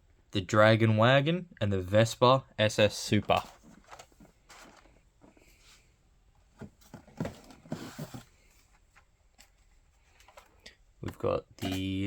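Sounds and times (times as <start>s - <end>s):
cardboard and plastic packaging rustling: 3.1s - 10.7s.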